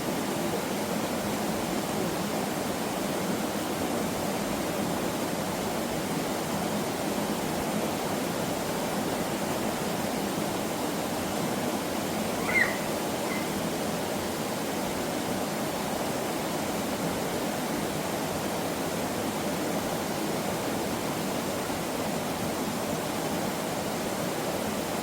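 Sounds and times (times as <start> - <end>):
water rushing over rocks: 0.0 - 25.0
short high chirp: 12.4 - 13.6.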